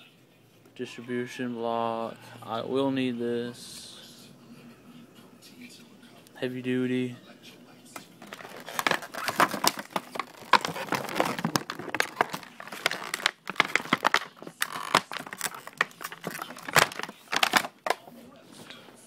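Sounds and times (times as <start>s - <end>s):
plastic packaging crinkling: 8.2s - 18.0s.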